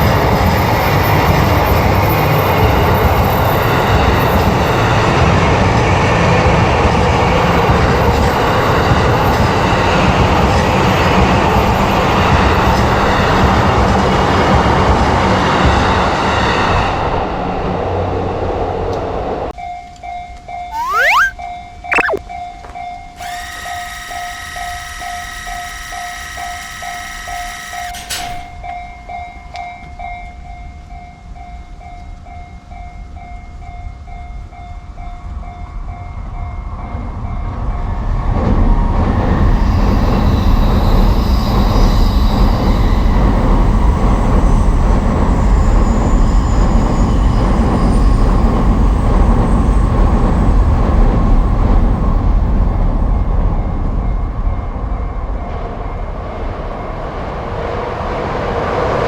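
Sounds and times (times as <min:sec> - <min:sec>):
train running past: 0:32.7 - 0:59.0.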